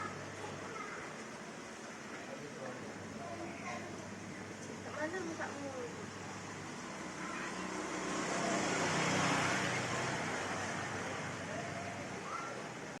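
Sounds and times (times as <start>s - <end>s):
vehicle passing by: 6.6s - 12.2s.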